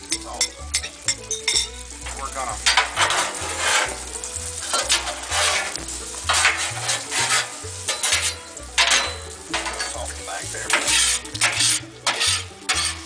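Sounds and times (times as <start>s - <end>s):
eggs sizzling on a griddle: 0.0s - 13.0s
spatula scraping on steel: 2.1s - 10.0s, 10.7s - 13.0s.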